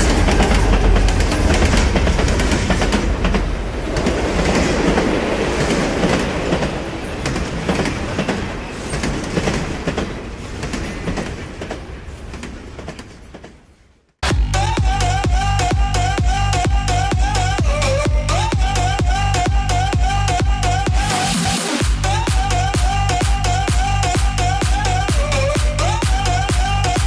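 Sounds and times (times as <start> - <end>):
train wheels clattering on track: 0.0 - 13.8.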